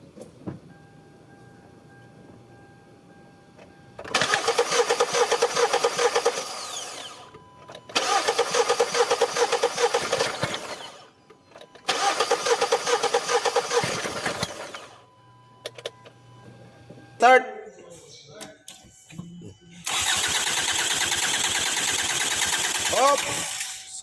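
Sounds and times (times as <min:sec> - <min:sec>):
car engine cranking on starter: 0:04.0 - 0:15.0, 0:19.8 - 0:24.0.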